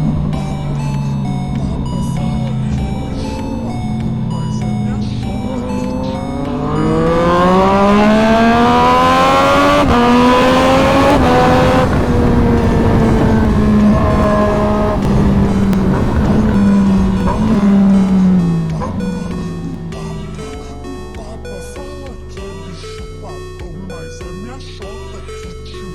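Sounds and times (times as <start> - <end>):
motorcycle engine accelerating: 0.0 - 23.5.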